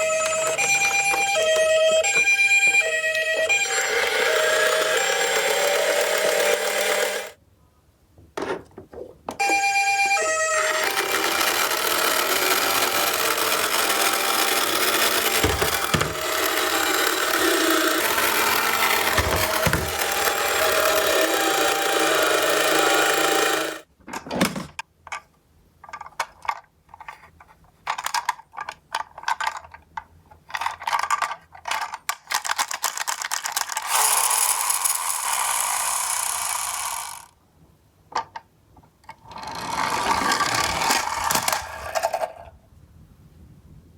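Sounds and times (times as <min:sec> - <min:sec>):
toy electronic sirens: 0:00.0 - 0:07.3, 0:09.4 - 0:23.8
toy cars clicking and rattling: 0:00.0 - 0:07.4, 0:09.4 - 0:23.9, 0:25.1 - 0:37.3, 0:39.0 - 0:42.5.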